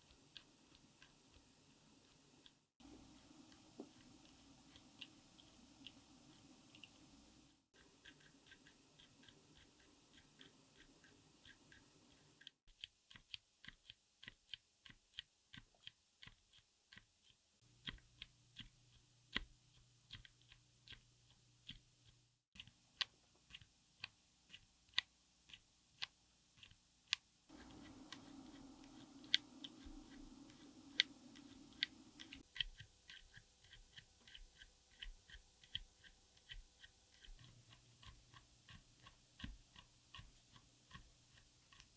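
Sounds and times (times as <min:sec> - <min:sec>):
muted keyboard keystrokes: 0:27.1 - 0:41.9.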